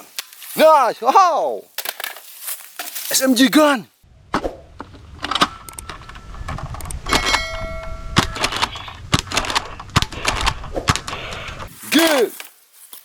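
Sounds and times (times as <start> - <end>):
short ringing ding: 7.1 - 8.4.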